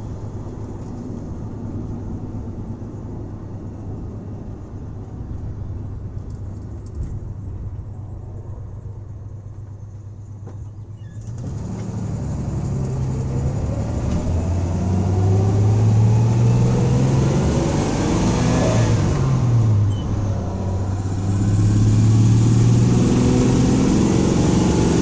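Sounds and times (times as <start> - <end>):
van engine accelerating hard: 7.5 - 25.0.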